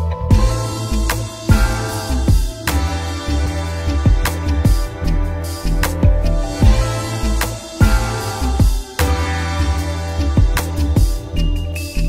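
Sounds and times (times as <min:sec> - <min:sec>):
bass: 0:00.0 - 0:12.0
drums: 0:00.0 - 0:12.0
guitar: 0:00.0 - 0:12.0.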